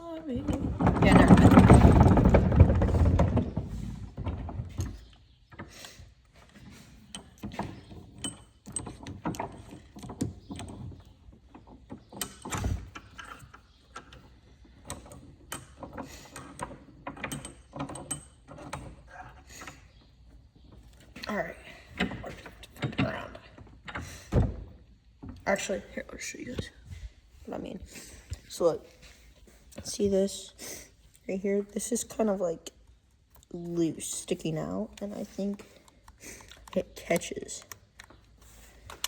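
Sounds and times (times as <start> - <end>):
saw parts clicking and rattling: 33.4 - 39.0.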